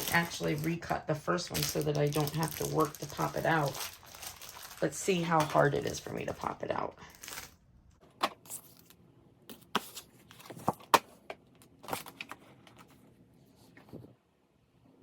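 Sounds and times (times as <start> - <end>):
material rustling: 1.6 - 6.0.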